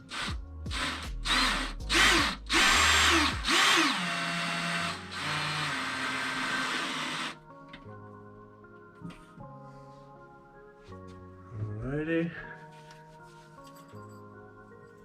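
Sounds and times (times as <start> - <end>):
power drill driving screws: 0.1 - 7.4.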